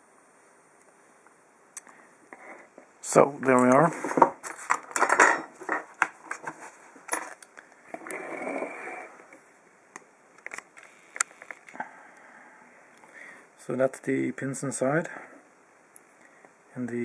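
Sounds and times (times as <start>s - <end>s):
metal scraping: 7.9s - 9.3s.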